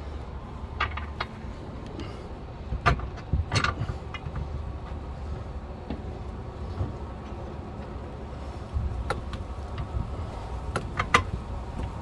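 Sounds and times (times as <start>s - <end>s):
metal hardware clicks: 2.7s - 4.5s, 10.7s - 12.0s.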